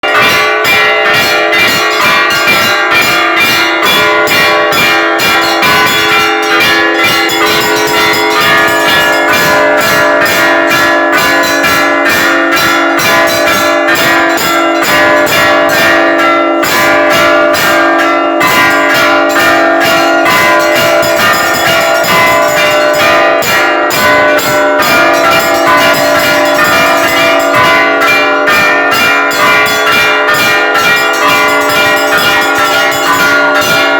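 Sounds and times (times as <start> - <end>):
church bells ringing: 0.0 - 33.9
sustained bell hum: 0.0 - 33.9.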